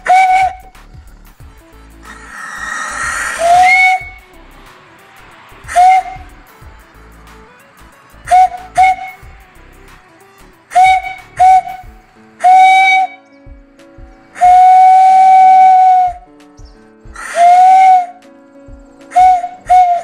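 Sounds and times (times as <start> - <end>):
steam whistle blasts: 0.0 - 13.2, 14.4 - 16.2, 17.2 - 18.2, 19.1 - 20.0
hiss of steam: 2.1 - 11.0.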